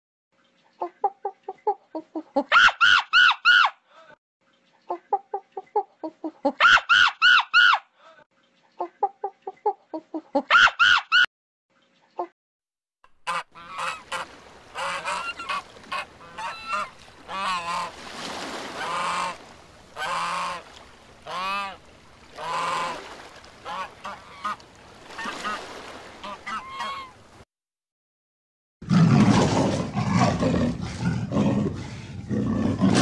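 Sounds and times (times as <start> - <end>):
fowl clucking: 13.2 - 17.9, 20.0 - 20.6, 21.3 - 21.8, 23.6 - 24.6, 26.2 - 27.2
geese honking: 13.2 - 18.0, 18.8 - 19.4, 20.0 - 23.0, 23.6 - 25.6, 26.2 - 27.2
loud repeated fowl calls: 13.2 - 18.0, 18.7 - 19.4, 20.0 - 27.2.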